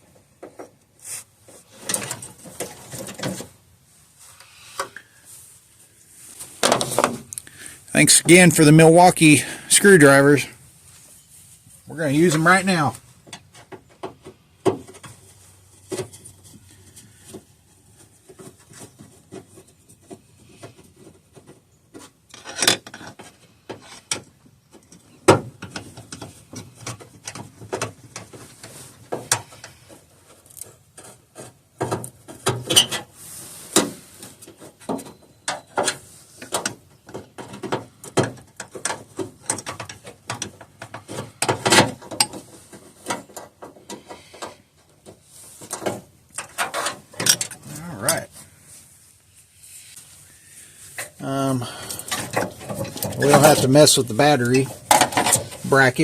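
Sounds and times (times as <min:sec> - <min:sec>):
hand tools clicking and knocking: 0:34.5 - 0:47.6
tools clanking: 0:45.6 - 0:47.6, 0:51.0 - 0:56.0.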